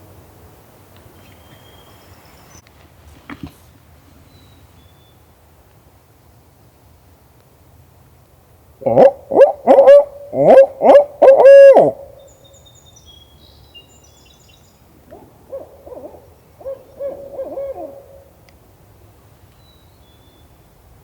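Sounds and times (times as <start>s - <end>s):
faint songbird chirps: 1.2s - 2.7s, 11.6s - 14.9s, 19.5s - 20.7s
owl hooting: 8.8s - 12.3s, 15.1s - 18.3s.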